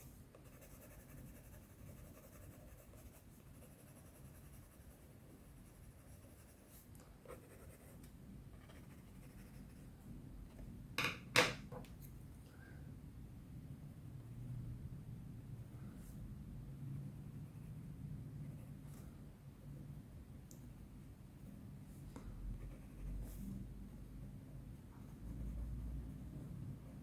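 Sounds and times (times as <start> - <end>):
pencil scratching on paper: 0.0 - 9.9, 22.6 - 23.5, 24.9 - 27.0.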